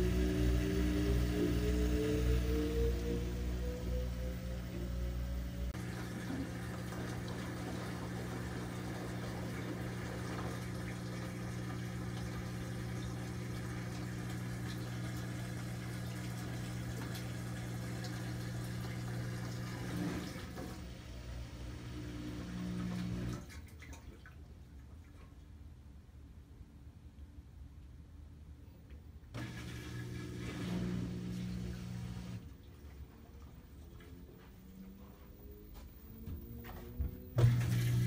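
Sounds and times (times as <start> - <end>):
washer drain pump humming: 0.0 - 24.1, 29.3 - 38.0
water draining: 5.8 - 20.9, 37.4 - 38.0.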